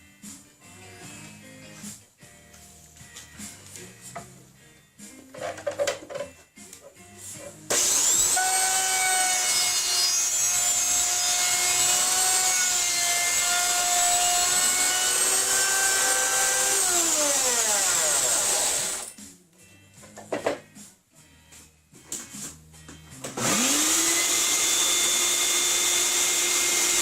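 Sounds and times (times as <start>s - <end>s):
power tool motor whining: 7.7s - 19.1s, 23.4s - 27.0s.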